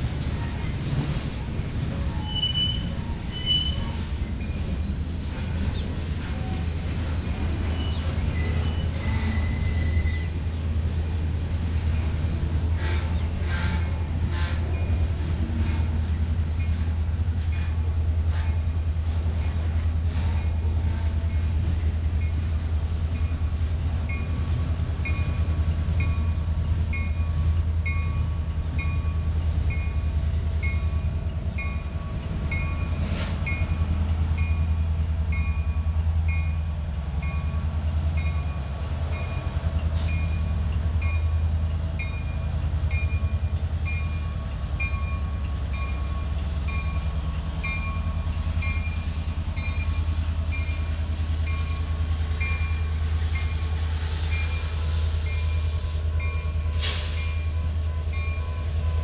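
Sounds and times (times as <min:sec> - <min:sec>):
train diesel rumble: 0:00.0 - 0:59.0.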